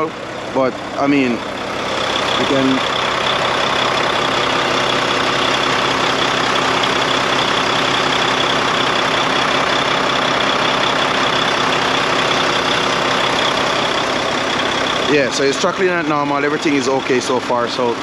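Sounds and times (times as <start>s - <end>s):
diesel truck idling: 0.0s - 18.0s.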